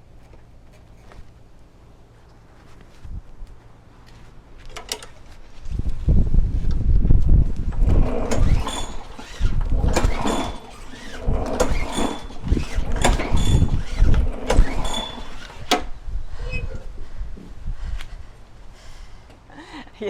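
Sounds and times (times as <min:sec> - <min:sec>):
recoil starter cord pulls: 0:07.5 - 0:16.0.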